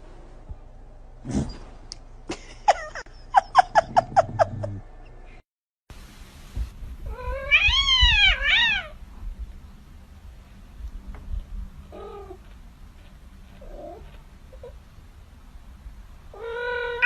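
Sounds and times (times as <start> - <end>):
cat long wavering meow: 16.4 - 17.0.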